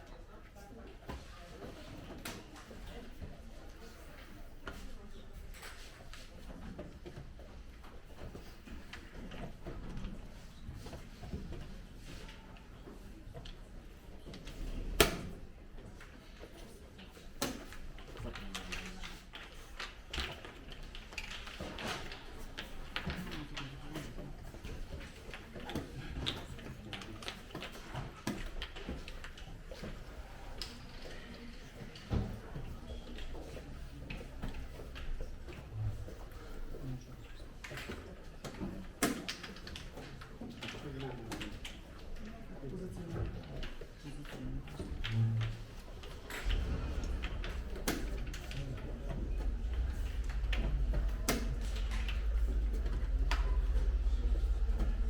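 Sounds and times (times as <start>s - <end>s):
low room hum: 41.0s - 55.0s.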